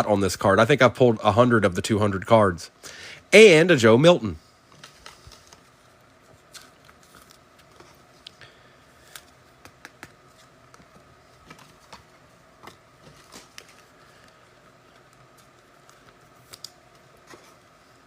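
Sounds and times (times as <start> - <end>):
cards and foil wrappers handled: 4.7 - 8.3, 8.9 - 17.6.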